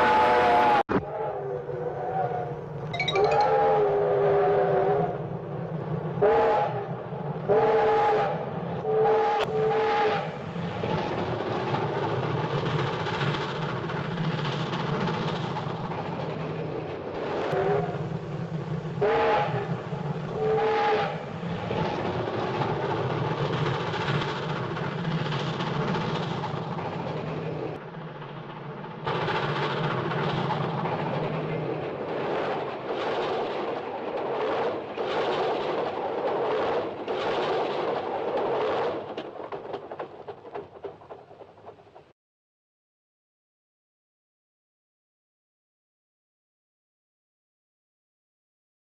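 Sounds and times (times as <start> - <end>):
train rumble and clatter: 4.2 - 42.1.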